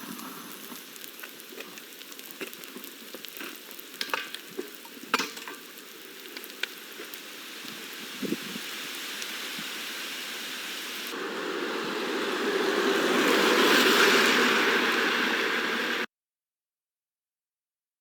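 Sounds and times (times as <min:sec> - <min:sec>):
gas burner flame hissing: 0:00.0 - 0:16.1.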